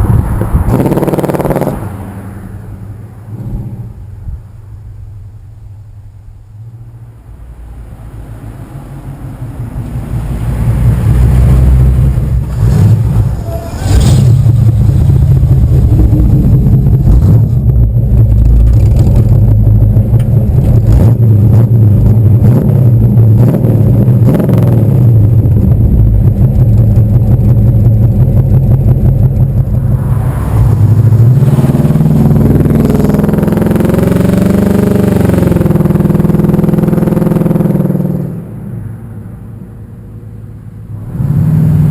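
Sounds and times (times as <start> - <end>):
car engine running: 8.8 - 38.4.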